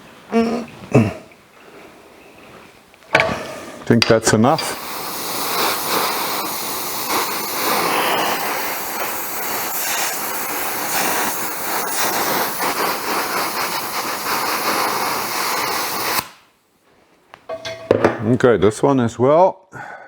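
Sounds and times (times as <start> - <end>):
gas torch flame hissing: 3.2 - 16.5.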